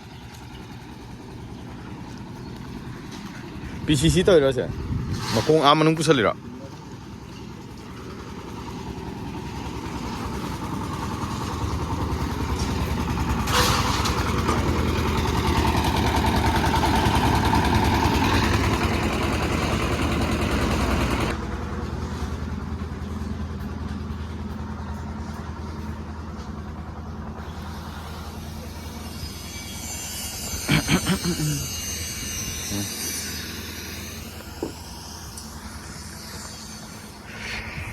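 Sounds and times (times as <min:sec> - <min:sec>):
engine running: 0:00.0 - 0:37.9.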